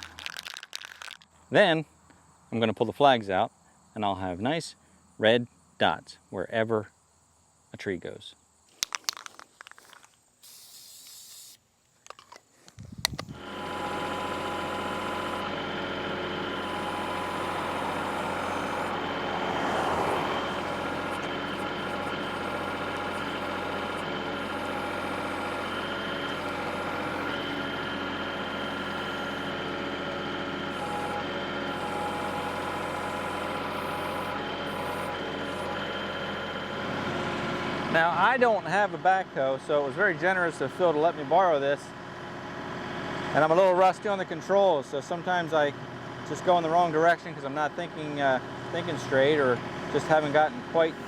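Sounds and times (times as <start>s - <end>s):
tractor diesel engine running: 0.0s - 1.2s, 13.1s - 51.0s
spray paint hiss: 10.4s - 11.6s.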